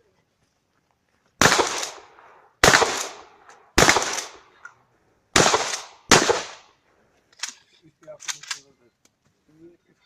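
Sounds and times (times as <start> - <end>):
shotgun shots: 1.4 - 4.4, 5.4 - 6.7.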